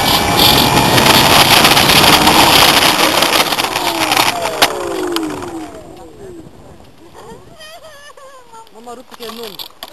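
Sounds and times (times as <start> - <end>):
model plane motor whining: 0.0 - 6.2
wind buffeting microphone: 0.0 - 9.2.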